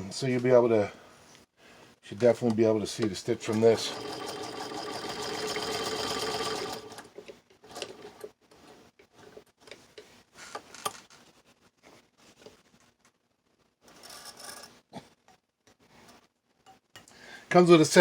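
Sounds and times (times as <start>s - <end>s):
sewing machine stitching: 3.4s - 8.3s.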